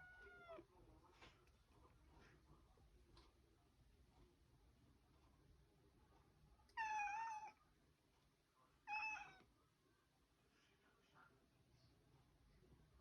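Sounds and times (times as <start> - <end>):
cat meowing: 0.0 - 0.6, 6.7 - 7.6, 8.9 - 9.4.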